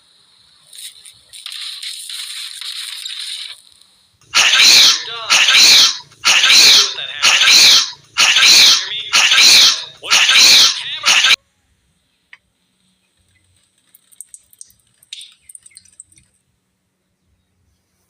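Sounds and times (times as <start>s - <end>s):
faint clicks: 13.1s - 16.4s.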